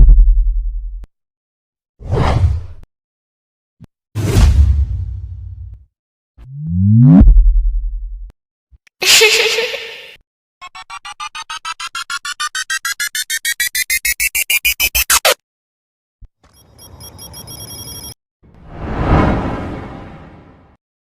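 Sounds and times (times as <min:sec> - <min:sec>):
rising electronic beeps: 0:16.6 - 0:18.2
synthetic whoosh burst: 0:18.7 - 0:20.7.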